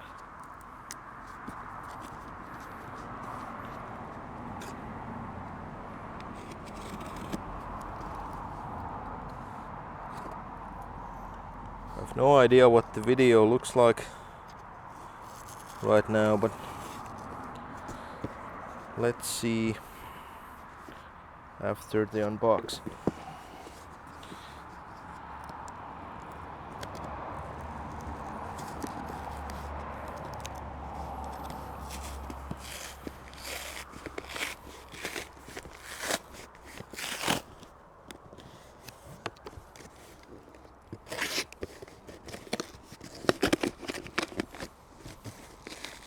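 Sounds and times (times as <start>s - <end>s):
scraping cardboard box: 6.2s - 8.4s, 15.1s - 18.9s, 22.6s - 25.6s, 27.4s - 46.0s
packaging crunching and rustling: 27.5s - 46.0s.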